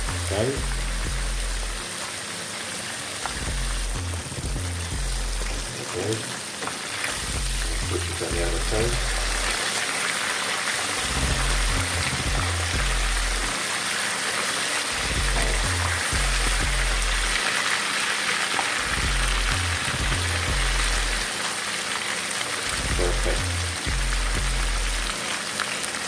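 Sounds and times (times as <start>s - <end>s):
music with repeating bass: 0.0s - 1.9s, 3.2s - 5.8s, 7.1s - 9.6s, 10.9s - 13.6s, 14.9s - 17.4s, 18.8s - 21.3s, 22.6s - 25.2s
fish sizzling in hot oil: 0.0s - 26.0s.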